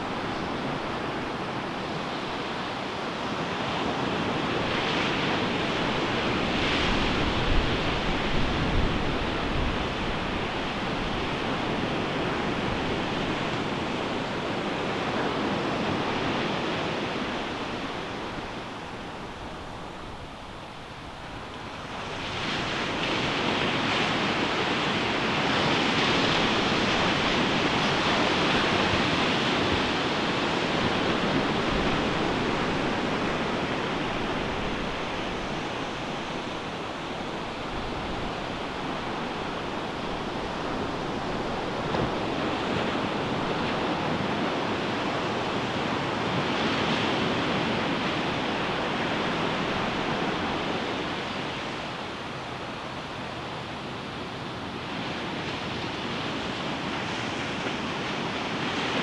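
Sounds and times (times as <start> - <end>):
ocean surf breaking: 22.0 - 52.0.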